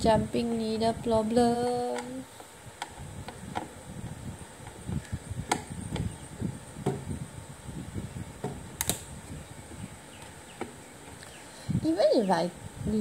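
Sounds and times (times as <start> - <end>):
handling knocks and clicks: 1.8 - 3.8, 6.8 - 7.1, 8.4 - 9.0, 9.7 - 11.2
soft thumps: 6.8 - 7.2, 8.4 - 8.7.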